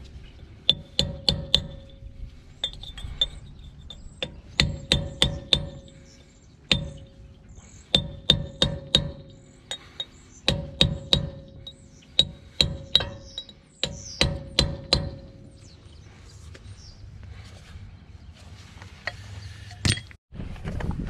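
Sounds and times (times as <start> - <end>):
hammer striking metal: 0.7 - 7.2, 7.9 - 15.8.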